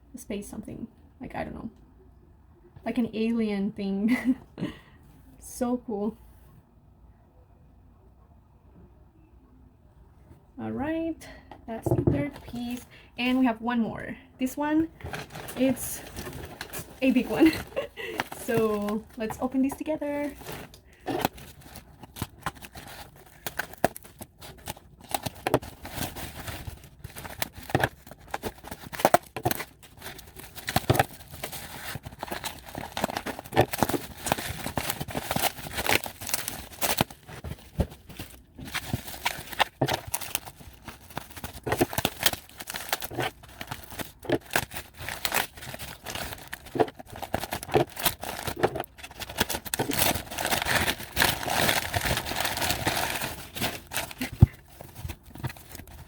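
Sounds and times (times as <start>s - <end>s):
packaging crinkling and tearing: 14.9s - 56.0s.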